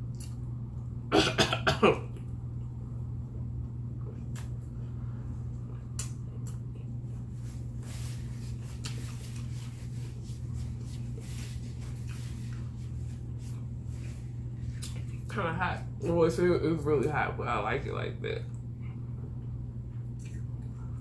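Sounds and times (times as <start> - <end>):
low hum: 0.0 - 21.0
mouth clicks and smacks eating: 0.1 - 0.4, 5.7 - 6.9, 14.7 - 15.2, 20.0 - 20.7.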